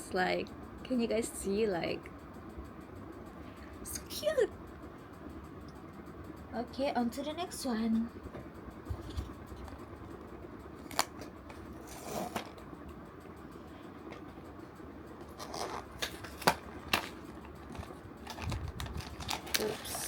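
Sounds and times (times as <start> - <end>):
packaging rustling: 15.3 - 20.0.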